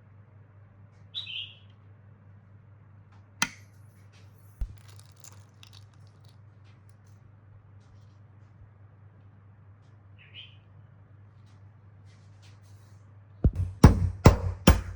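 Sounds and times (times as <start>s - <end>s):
sharp click: 3.4s - 3.7s
dull knock: 13.5s - 14.9s.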